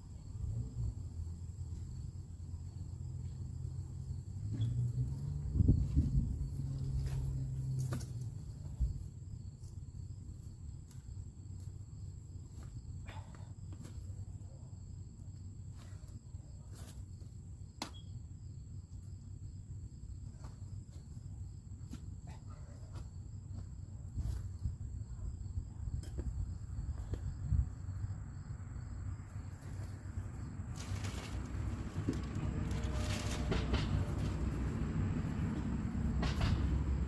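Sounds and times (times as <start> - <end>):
insects trilling: 0.0 - 37.0.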